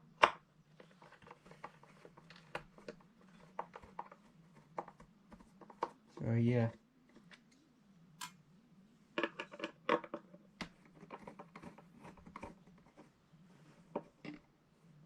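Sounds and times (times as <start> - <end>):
faint low hum: 0.1 - 15.0
plastic parts clicking and scraping: 0.8 - 6.0, 9.2 - 13.1.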